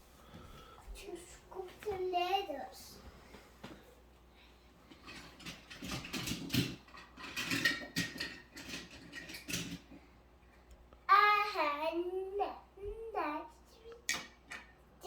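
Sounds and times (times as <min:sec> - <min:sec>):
toy mechanism clicking and rattling: 0:05.0 - 0:09.9.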